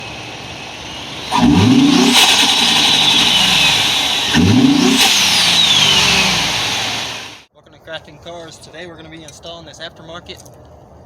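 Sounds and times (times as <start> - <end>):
engine revving: 0.0 - 7.5
high whine: 0.0 - 7.5.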